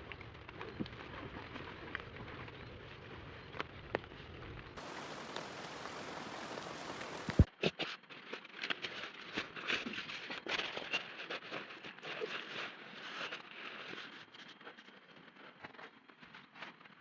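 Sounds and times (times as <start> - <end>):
steady rain: 0.0 - 7.5.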